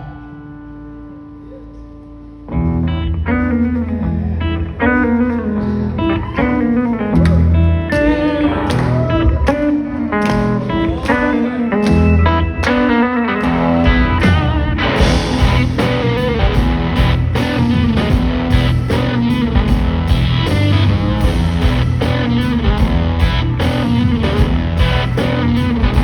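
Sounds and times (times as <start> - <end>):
bass guitar: 0.0 - 26.0
heavy guitar riff: 0.0 - 26.0
drums with cymbal crashes: 15.0 - 26.0.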